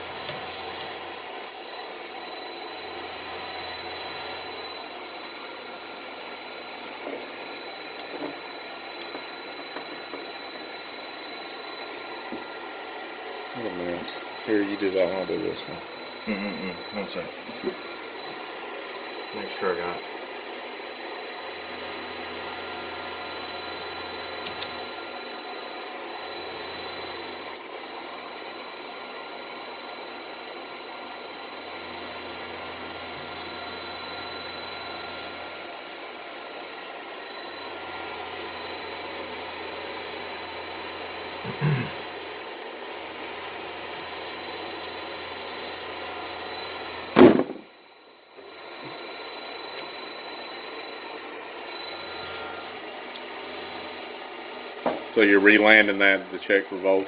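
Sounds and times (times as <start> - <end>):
high steady tone: 0.0 - 57.0
knocks from wiring work: 47.2 - 47.6, 54.8 - 55.1.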